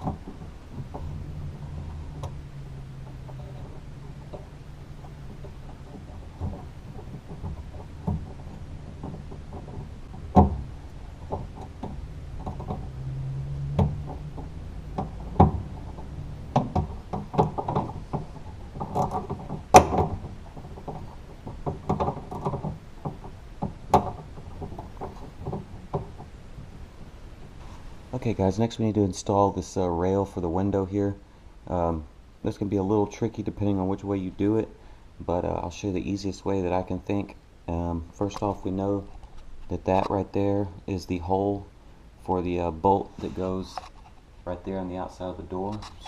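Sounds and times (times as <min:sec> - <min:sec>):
tools clicking and knocking on metal: 0:00.0 - 0:27.6.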